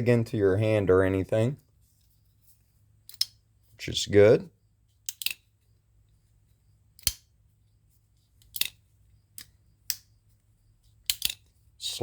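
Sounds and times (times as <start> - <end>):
folding knife clicks: 5.1 - 5.4, 7.0 - 7.2, 8.4 - 8.8, 11.0 - 11.5.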